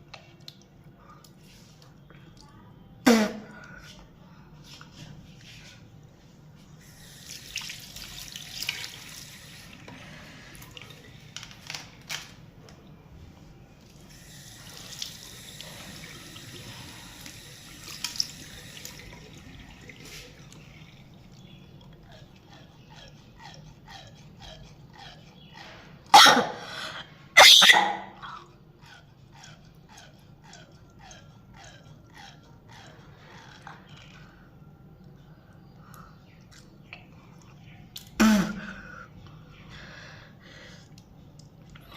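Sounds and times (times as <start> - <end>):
person coughing: 38.2 - 38.8.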